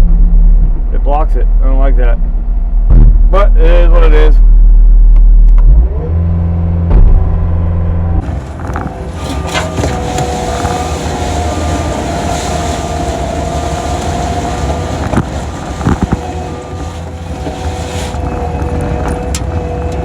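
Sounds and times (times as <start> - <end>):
diesel engine droning: 0.0 - 20.0
wind noise on microphone: 8.2 - 20.0.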